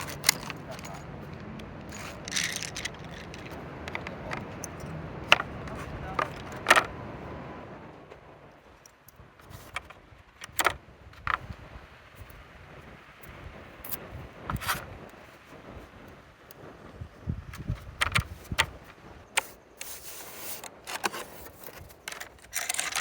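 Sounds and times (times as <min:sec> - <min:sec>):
small hard objects clinking: 0:00.0 - 0:06.9, 0:20.5 - 0:23.0.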